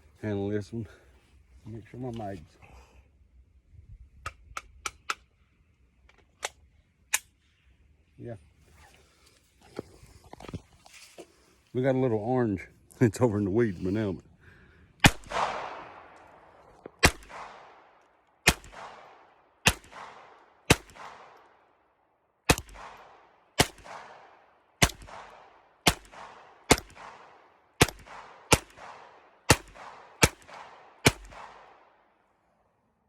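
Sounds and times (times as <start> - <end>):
pistol shots with echo: 15.0 - 16.4, 17.0 - 21.5, 22.4 - 31.9.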